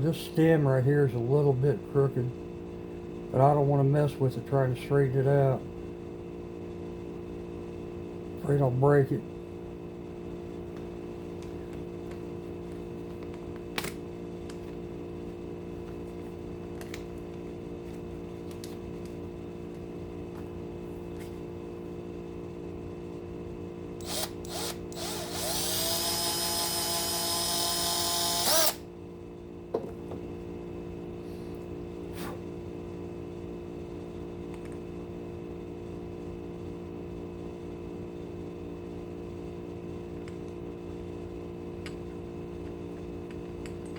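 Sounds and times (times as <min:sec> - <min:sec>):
steady background hum: 0:00.0 - 0:43.9
power tool motor whining: 0:24.0 - 0:28.8.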